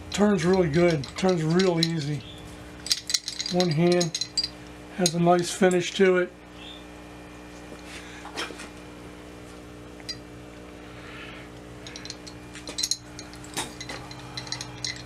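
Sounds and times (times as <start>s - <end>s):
electrical hum: 0.0s - 15.0s.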